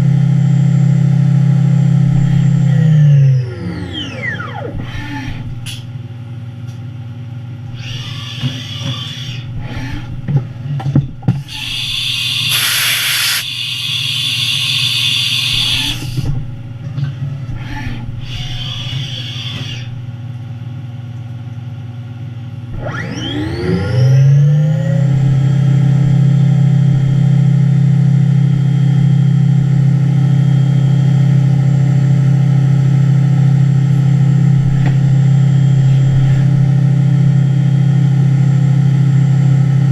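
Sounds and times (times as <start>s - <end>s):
cnc mill humming: 0.0s - 21.4s, 22.6s - 39.9s
bursts of hissing: 11.5s - 16.2s
spindle spinning up: 11.5s - 16.2s.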